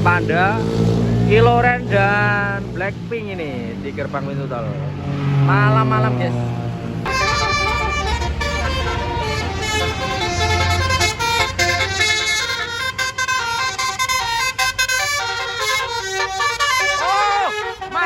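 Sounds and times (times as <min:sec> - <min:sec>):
bus engine running low: 0:00.0 - 0:18.0
musical bus air horn melody: 0:07.0 - 0:18.0.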